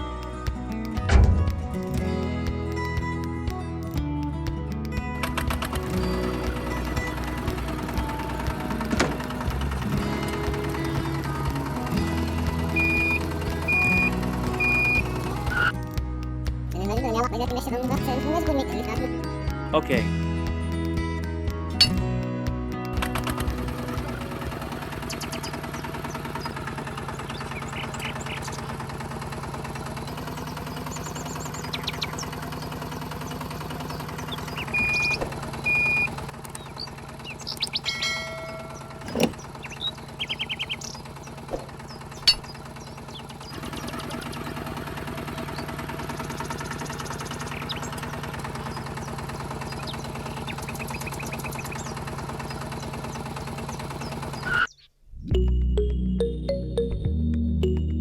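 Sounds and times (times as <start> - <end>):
clicks and knocks: 0.8 - 2.1, 4.8 - 12.0
small electric motor humming: 5.5 - 15.9, 23.0 - 54.6.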